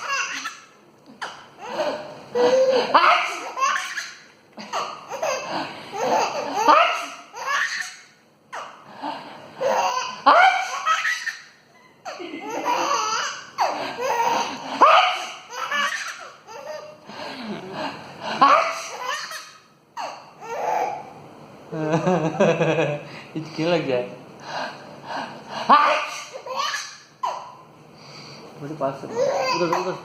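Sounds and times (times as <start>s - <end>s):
young child laughing: 12.0s - 17.7s.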